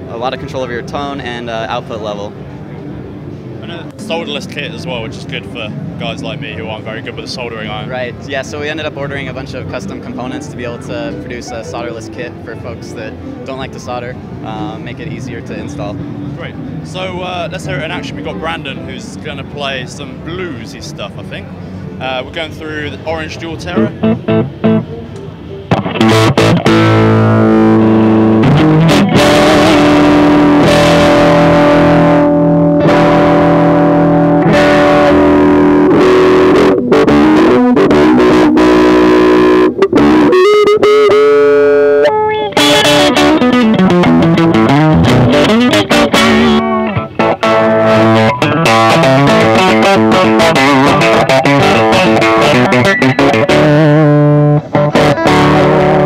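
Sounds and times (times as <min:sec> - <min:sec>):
electric guitar playing bluesy lines: 0:09.1 - 0:19.6, 0:22.9 - 0:56.0.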